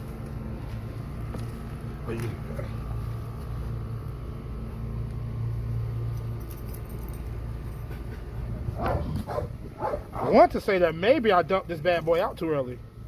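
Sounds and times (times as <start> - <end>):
steady low hum: 0.0 - 13.0
rustling and clinking in soil: 6.0 - 8.4.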